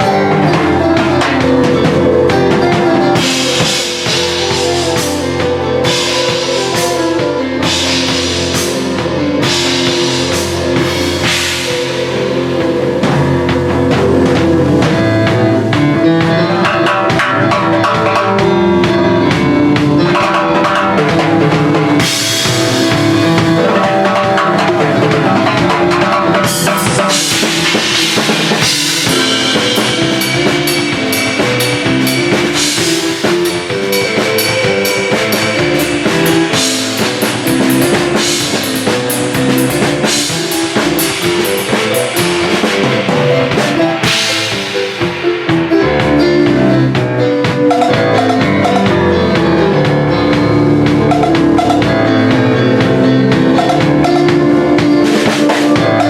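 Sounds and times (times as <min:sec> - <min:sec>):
drum kit groove: 0:00.0 - 0:56.0
melodic pitched accompaniment: 0:00.0 - 0:56.0
cymbal crashes: 0:26.4 - 0:46.7.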